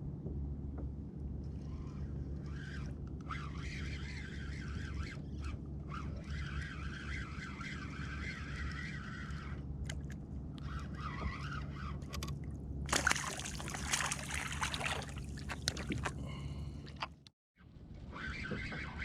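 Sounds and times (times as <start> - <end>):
water sloshing and splashing: 12.0 - 17.3.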